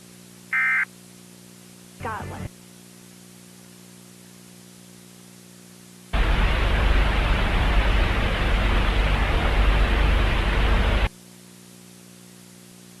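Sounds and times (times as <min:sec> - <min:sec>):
faint low hum: 0:00.0 - 0:13.0
loud static noise: 0:00.0 - 0:13.0.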